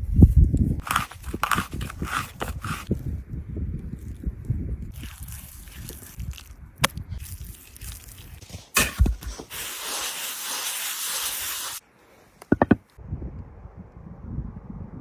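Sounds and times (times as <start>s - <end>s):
sharp knocks: 12.5s - 12.8s.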